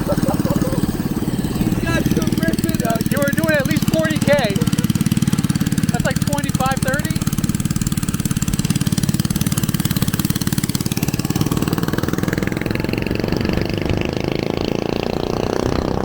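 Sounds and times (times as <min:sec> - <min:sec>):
mini-bike engine running: 0:00.0 - 0:16.0.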